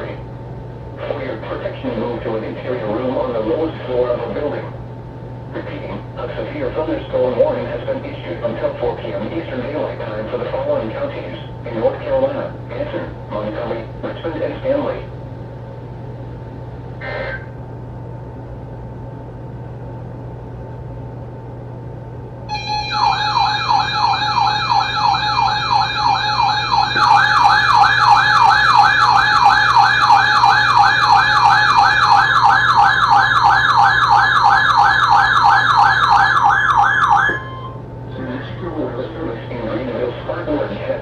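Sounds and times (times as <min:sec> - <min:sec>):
low hum: 0:00.0 - 0:41.0
electronic sirens yelping: 0:22.5 - 0:37.8.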